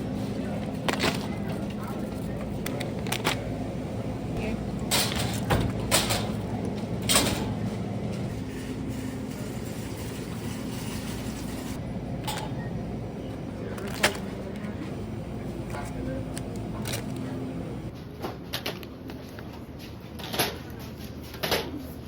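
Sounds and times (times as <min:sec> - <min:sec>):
truck engine running: 0:00.0 - 0:17.9.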